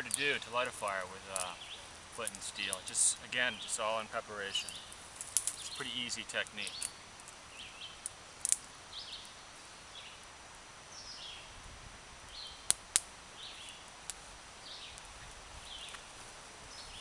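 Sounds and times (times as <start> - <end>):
sharp cracks: 0.0 - 3.4, 4.6 - 7.4, 8.0 - 8.8
small birds chirping: 0.0 - 11.6, 12.3 - 17.0.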